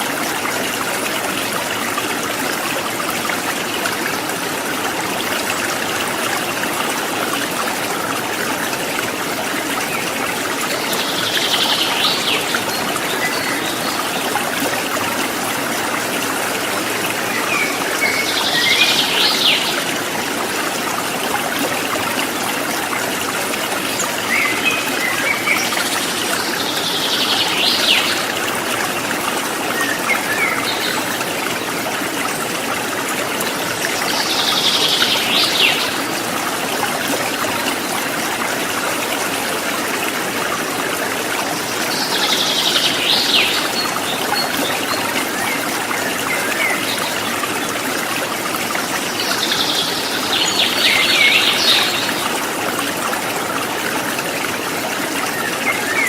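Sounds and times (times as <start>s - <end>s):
river water over stones: 0.0s - 56.0s.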